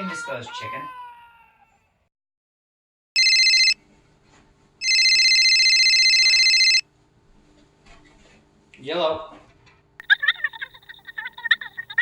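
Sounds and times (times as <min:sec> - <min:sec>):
telephone ringing: 0:03.2 - 0:03.8, 0:04.8 - 0:06.8.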